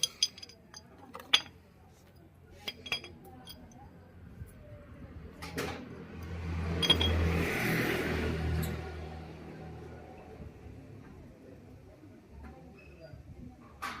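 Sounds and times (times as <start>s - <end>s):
metallic clinks of tools: 0.0s - 1.6s, 2.6s - 3.8s, 6.8s - 7.2s.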